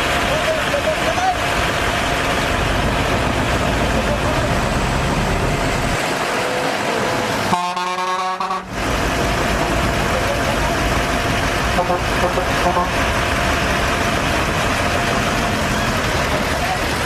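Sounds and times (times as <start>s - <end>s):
heavy machinery engine running: 0.0s - 17.0s
vehicle horn: 7.5s - 8.8s, 11.8s - 13.0s.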